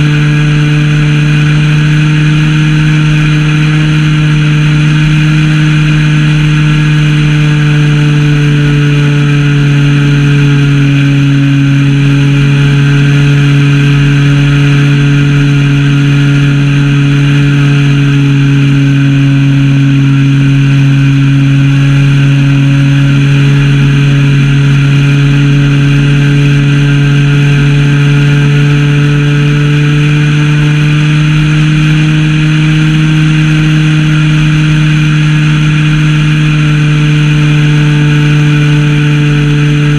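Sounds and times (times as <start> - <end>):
model plane engine drone: 0.0 - 39.9.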